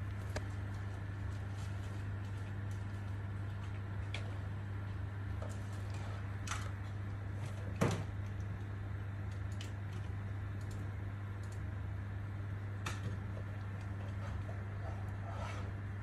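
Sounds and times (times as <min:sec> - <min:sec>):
steady low hum: 0:00.0 - 0:16.0.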